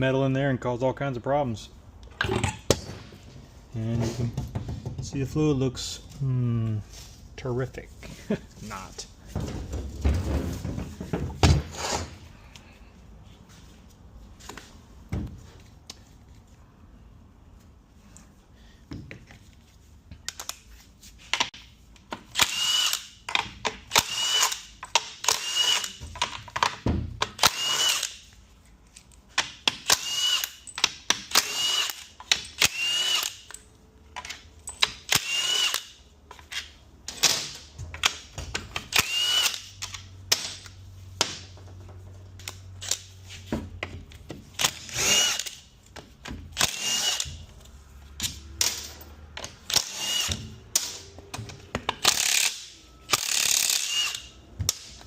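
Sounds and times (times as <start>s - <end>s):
tool and bolt clatter: 48.2s - 49.9s.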